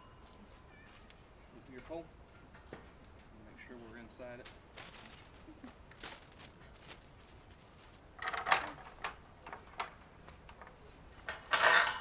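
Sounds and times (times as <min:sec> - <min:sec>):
small metal pieces clinking: 0:04.5 - 0:10.7.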